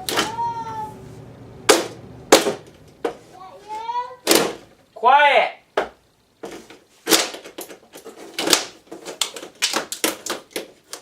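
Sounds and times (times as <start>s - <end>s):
plastic housing clacking and cracking: 7.1s - 11.0s.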